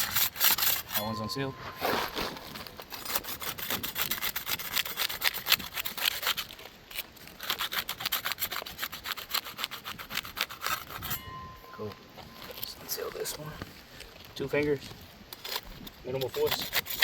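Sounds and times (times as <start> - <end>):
putty knife scraping shingle: 0.0 - 11.3, 14.8 - 17.0.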